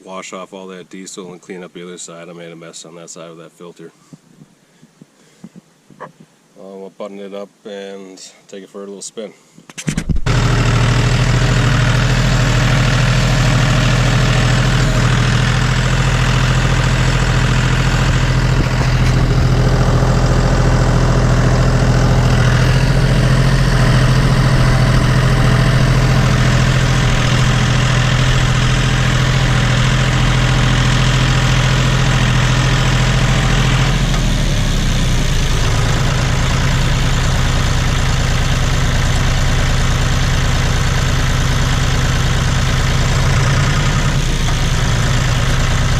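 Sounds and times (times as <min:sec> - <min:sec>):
tractor diesel engine running: 0:10.3 - 0:45.9.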